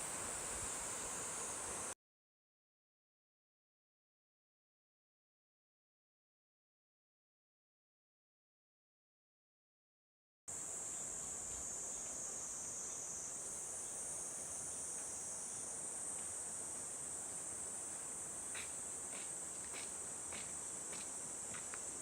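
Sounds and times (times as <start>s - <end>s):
insect chorus: 0.0s - 2.0s, 10.5s - 22.0s.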